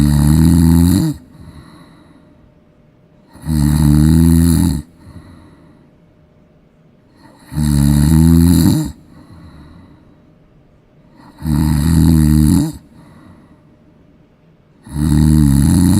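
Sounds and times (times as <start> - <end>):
dog snoring: 0.0 - 2.0, 3.2 - 5.4, 7.1 - 9.8, 11.1 - 13.3, 14.8 - 15.9.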